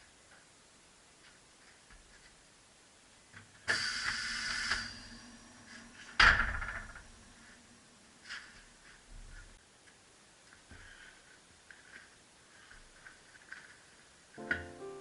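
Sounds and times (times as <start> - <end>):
low machine hum: 4.4 - 9.6.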